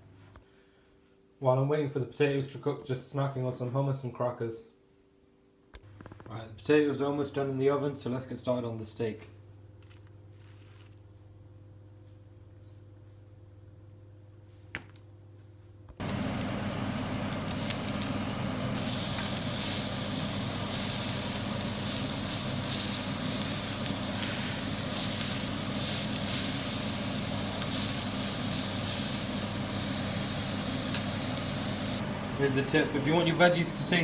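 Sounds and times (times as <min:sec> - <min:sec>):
steak sizzling in a pan: 0:16.0 - 0:33.6.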